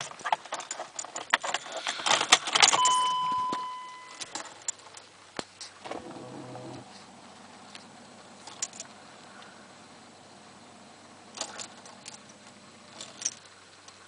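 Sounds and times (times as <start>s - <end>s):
car keys jangling: 0.0s - 5.1s, 5.7s - 9.0s, 11.1s - 14.0s
faint low hum: 2.6s - 14.0s
ignition chime: 2.7s - 4.5s.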